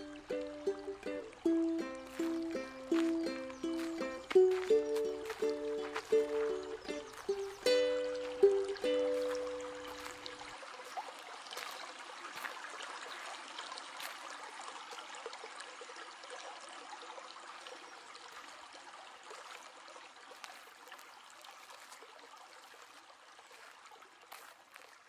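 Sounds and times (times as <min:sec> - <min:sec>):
stream babbling over rocks: 0:00.0 - 0:25.0.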